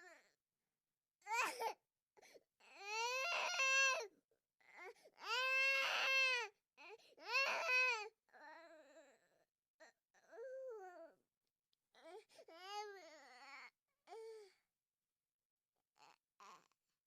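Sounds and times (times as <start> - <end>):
infant crying: 1.3 - 1.7, 2.6 - 4.1, 4.7 - 9.1.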